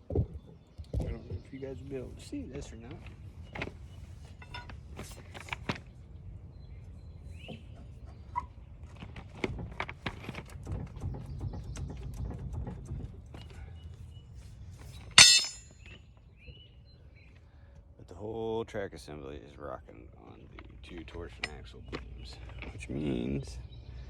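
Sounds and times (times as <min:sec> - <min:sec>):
track undercarriage knocks and clunks: 0:02.8 - 0:04.8, 0:07.5 - 0:13.6
loud ringing metallic clank: 0:15.2 - 0:15.9.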